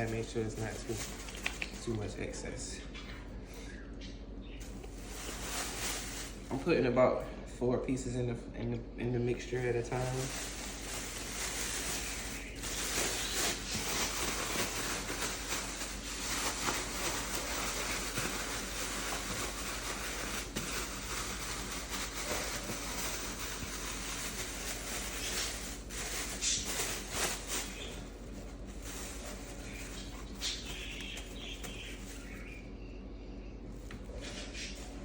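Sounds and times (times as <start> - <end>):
plastic bag rustling and crackling: 0.0 - 2.2, 4.6 - 6.8, 9.4 - 32.6.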